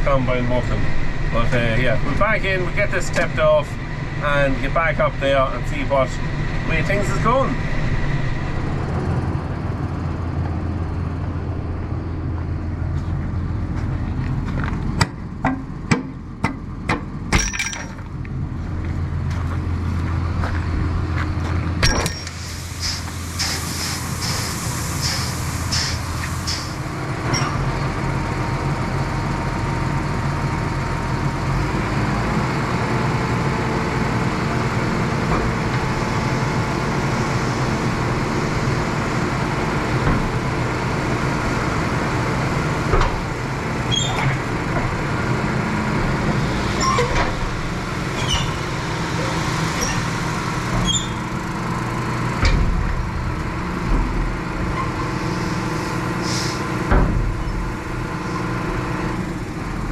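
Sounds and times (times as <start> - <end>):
tractor engine running: 0.0 - 59.9
short clicks and squeaks: 43.9 - 44.4, 50.8 - 51.2.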